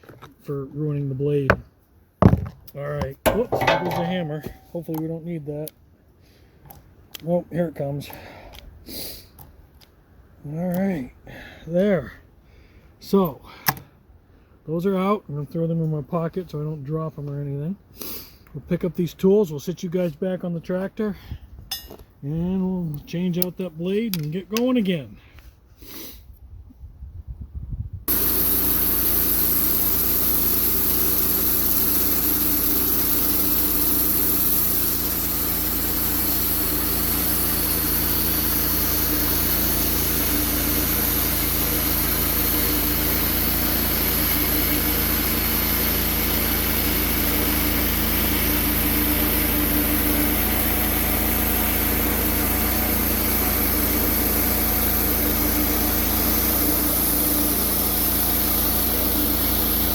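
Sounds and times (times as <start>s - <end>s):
sawmill engine running: 2.2s - 5.0s, 28.1s - 59.9s.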